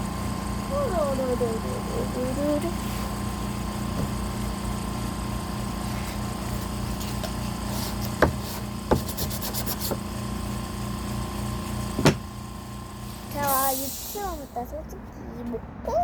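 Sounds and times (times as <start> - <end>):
wood knocking on work surface: 3.9 - 4.2, 8.1 - 9.3, 12.0 - 12.3
sandpaper rubbing on wood: 7.7 - 10.0.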